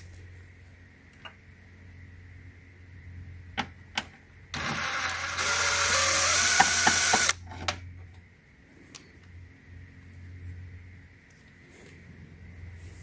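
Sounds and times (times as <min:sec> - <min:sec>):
electric screwdriver running: 0:04.6 - 0:07.4.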